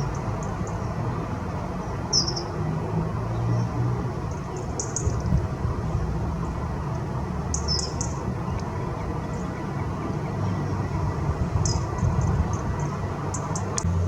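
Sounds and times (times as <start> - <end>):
high-pitched bird chirps: 2.1 - 2.5, 4.4 - 5.2, 7.5 - 9.7, 11.6 - 13.7
steady low rumble: 4.0 - 14.0.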